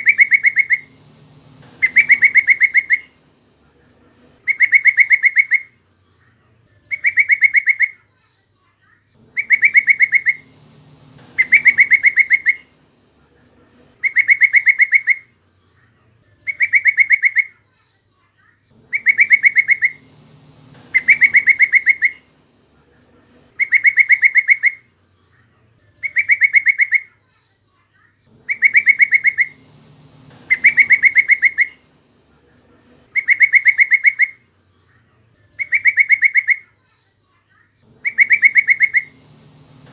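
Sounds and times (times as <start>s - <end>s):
bird chattering trill: 0.0s - 3.5s, 4.2s - 5.8s, 6.9s - 8.1s, 9.2s - 12.9s, 13.7s - 15.4s, 16.4s - 17.6s, 18.8s - 24.9s, 26.0s - 27.2s, 28.3s - 36.8s, 37.8s - 39.9s.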